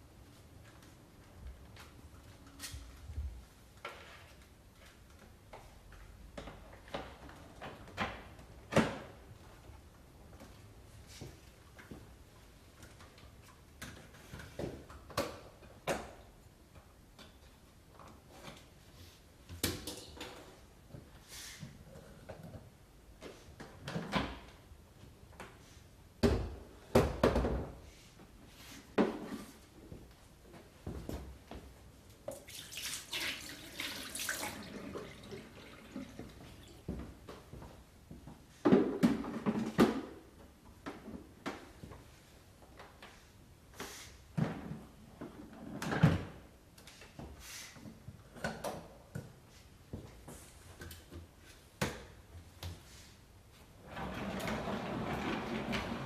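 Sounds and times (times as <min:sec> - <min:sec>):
objects knocking and clunking: 0:38.6 - 0:42.0.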